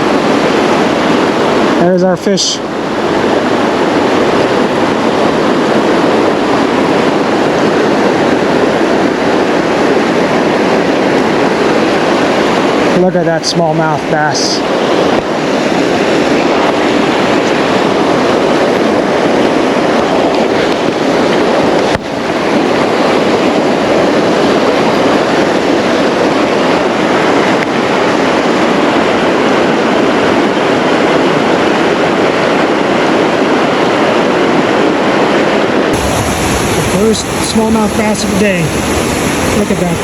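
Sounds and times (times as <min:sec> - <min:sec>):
fast-flowing river water rushing: 0:00.0 - 0:40.0.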